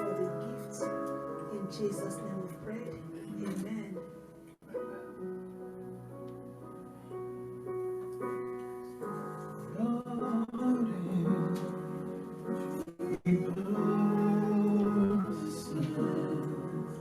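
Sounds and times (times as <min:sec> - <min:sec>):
keyboard playing sustained chords: 0:00.0 - 0:17.0
person singing: 0:09.7 - 0:17.0.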